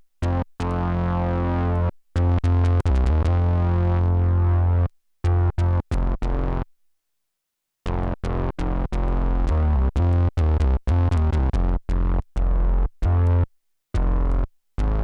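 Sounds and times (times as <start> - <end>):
synth-like electric bass notes: 0.2 - 6.7, 7.9 - 15.0.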